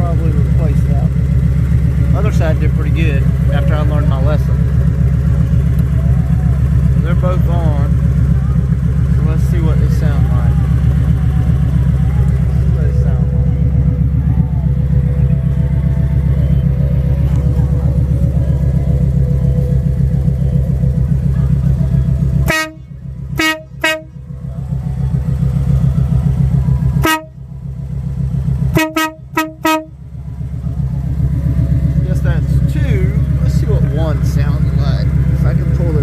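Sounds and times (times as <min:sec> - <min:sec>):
motorcycle idling: 0:00.0 - 0:36.0
air horn blasts: 0:22.4 - 0:24.4, 0:26.6 - 0:27.6, 0:28.6 - 0:30.2.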